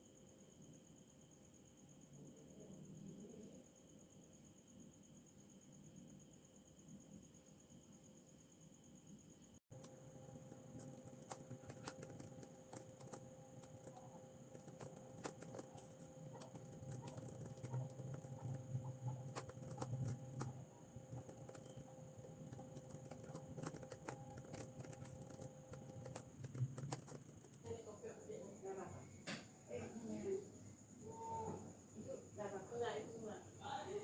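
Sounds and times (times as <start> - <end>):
low electrical hum: 9.2 - 34.0
keyboard typing clicks: 9.7 - 27.7.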